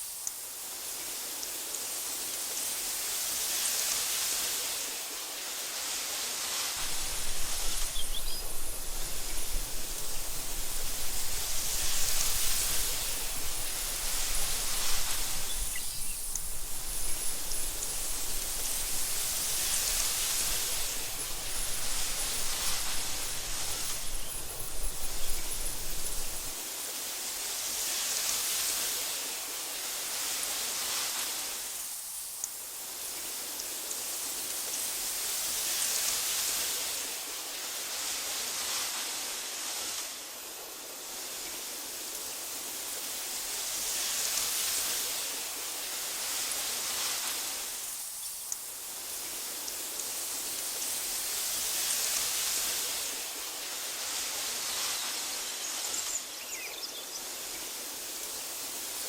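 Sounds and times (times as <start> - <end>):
wind through grass: 0.0 - 59.0
faint ticks: 0.2 - 0.4, 32.4 - 32.6, 48.3 - 48.7.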